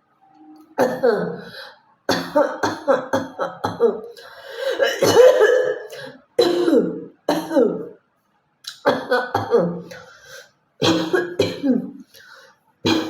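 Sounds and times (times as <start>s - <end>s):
woman coughing: 0.8s - 1.4s, 2.1s - 4.1s, 4.7s - 8.0s, 8.8s - 9.9s, 10.8s - 12.0s
woman clearing her throat: 8.7s - 9.9s, 10.8s - 12.0s.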